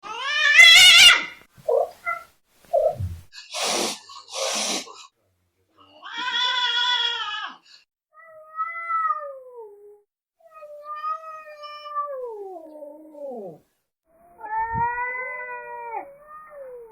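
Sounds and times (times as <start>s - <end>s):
cat yowling: 0.0s - 2.3s, 8.2s - 9.9s, 14.2s - 16.9s
cat hissing: 0.6s - 5.0s
cat growling: 10.7s - 13.6s.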